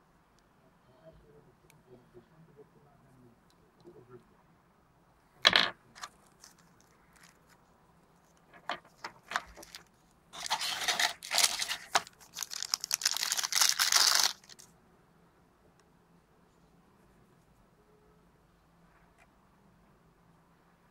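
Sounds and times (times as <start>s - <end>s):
wrapping rustling and crinkling: 6.0s - 7.6s, 8.3s - 14.7s.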